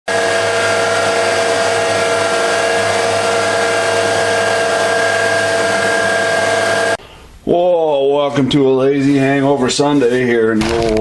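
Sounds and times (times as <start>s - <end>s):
machine motor whining: 0.1s - 7.0s.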